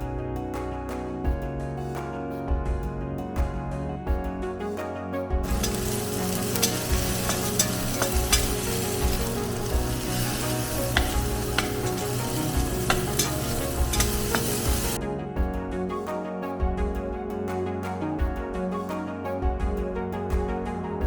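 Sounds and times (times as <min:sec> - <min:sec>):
food sizzling in a pan: 0:05.4 - 0:15.0
utensil clicking against pan: 0:05.5 - 0:15.0.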